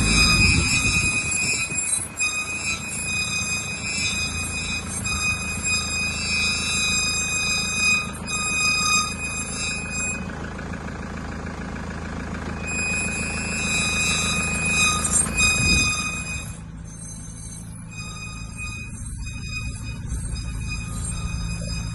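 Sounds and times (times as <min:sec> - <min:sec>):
high-pitched whine: 0:00.0 - 0:10.4, 0:12.6 - 0:21.9
vehicle low rumble: 0:00.0 - 0:21.9.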